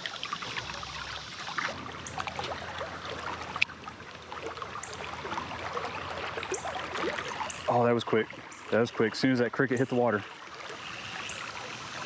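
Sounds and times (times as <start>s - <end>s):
creek water running: 0.0s - 12.0s
small water splashes: 0.0s - 12.0s.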